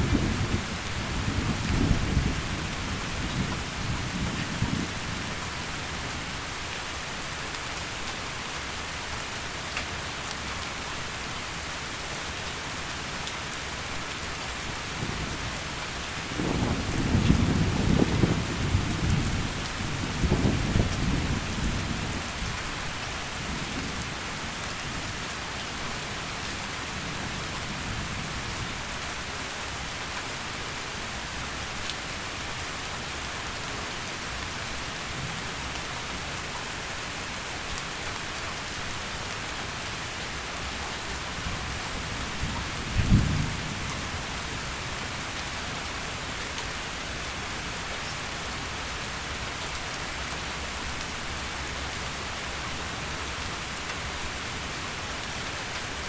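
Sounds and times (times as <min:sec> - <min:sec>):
heavy rain: 0:00.0 - 0:56.0
thunder rumbling: 0:16.4 - 0:22.0, 0:42.9 - 0:44.1.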